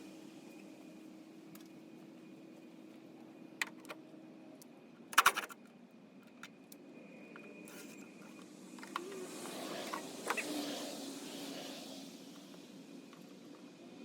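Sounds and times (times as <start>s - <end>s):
small parts clattering: 5.1s - 5.6s.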